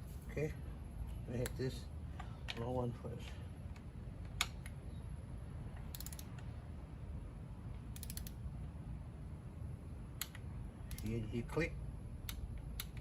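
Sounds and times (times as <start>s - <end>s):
socket ratchet clicking: 5.7s - 6.5s, 7.8s - 8.4s, 10.2s - 11.2s, 12.2s - 13.0s.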